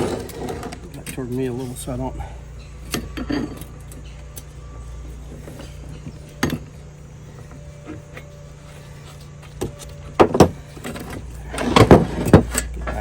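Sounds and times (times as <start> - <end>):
steady low hum: 0.0 - 13.0
metal tools clinking and knocking: 2.6 - 6.8.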